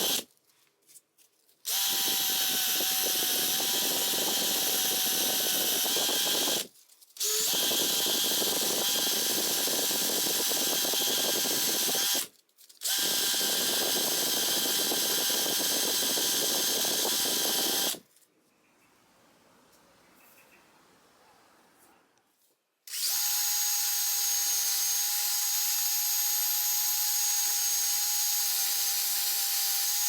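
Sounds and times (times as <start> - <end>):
power tool motor running: 0.0 - 0.2, 1.7 - 18.0, 22.9 - 30.0.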